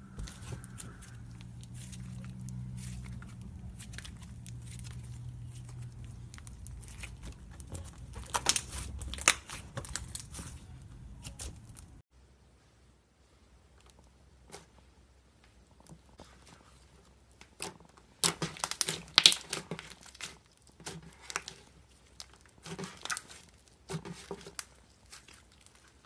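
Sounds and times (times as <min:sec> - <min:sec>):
slime crackling and clicking: 0:00.7 - 0:10.4, 0:17.4 - 0:25.9.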